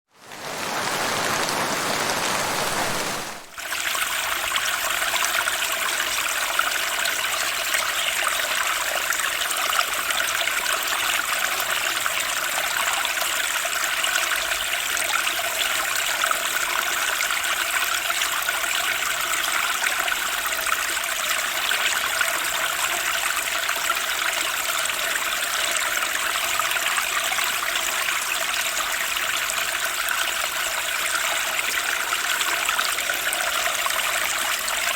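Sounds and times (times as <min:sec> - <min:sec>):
stream rushing over rocks: 0:00.1 - 0:05.5.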